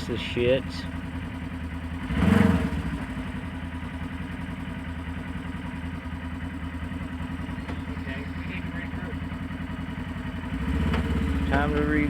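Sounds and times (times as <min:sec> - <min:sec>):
machine engine idling: 0:03.1 - 0:12.0.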